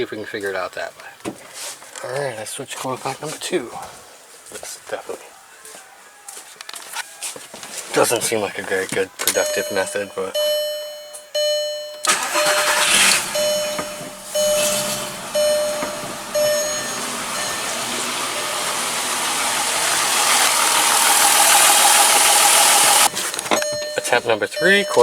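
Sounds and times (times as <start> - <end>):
car engine cranking and misfiring: 9.0 - 25.0
car warning chime dings: 9.2 - 25.0.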